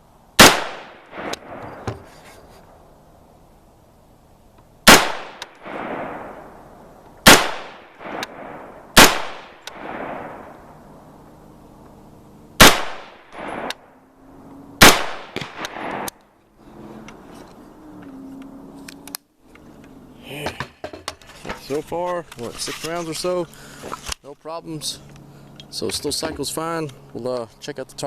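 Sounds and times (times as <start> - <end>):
rifle shots with rolling echo: 0.4 - 2.1, 4.8 - 11.2, 12.6 - 14.0, 14.8 - 16.2.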